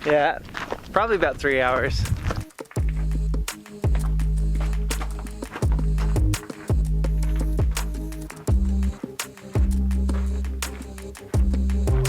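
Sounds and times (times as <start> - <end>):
deep held bass notes: 2.8 - 12.0.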